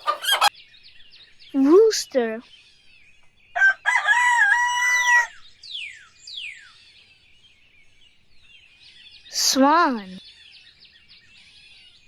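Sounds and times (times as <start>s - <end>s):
faint small birds chirping: 0.0s - 12.0s
rooster crowing: 3.6s - 5.4s.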